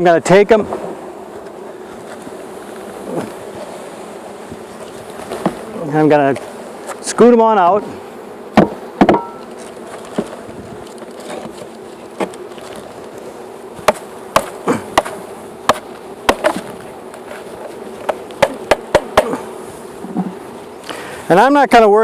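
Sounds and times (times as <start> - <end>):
bees buzzing: 0.0 - 22.0
knocks on wooden box: 8.5 - 9.4, 13.8 - 16.7, 18.0 - 19.4.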